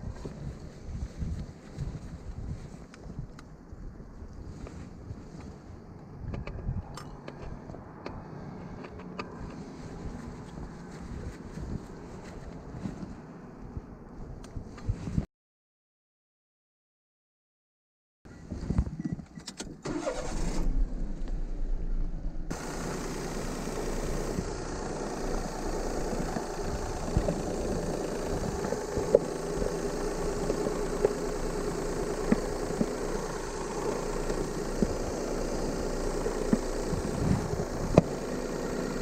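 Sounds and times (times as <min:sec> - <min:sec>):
car engine starting and idling: 0:19.4 - 0:39.0.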